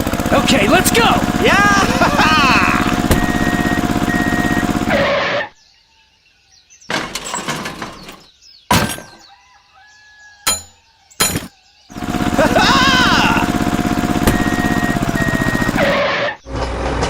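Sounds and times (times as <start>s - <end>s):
small motor running: 0.0s - 5.4s, 11.9s - 16.9s
shattering crashes: 8.7s - 9.3s.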